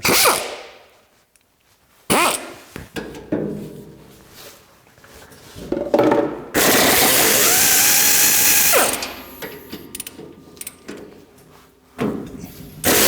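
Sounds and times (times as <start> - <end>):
air ratchet whirring: 6.6 - 9.4
metallic clicks: 9.9 - 10.8.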